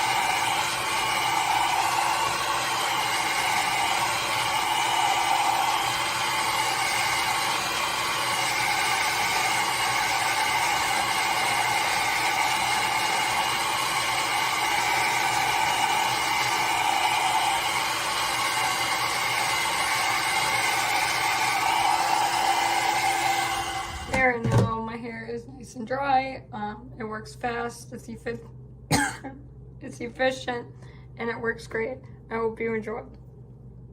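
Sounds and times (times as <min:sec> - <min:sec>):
hair dryer running: 0:00.0 - 0:24.6.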